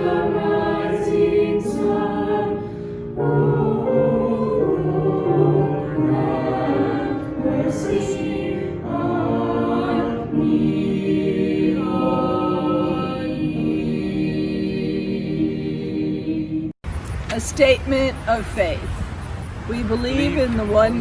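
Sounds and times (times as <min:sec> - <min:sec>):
choir singing sacred music: 0:00.0 - 0:16.8.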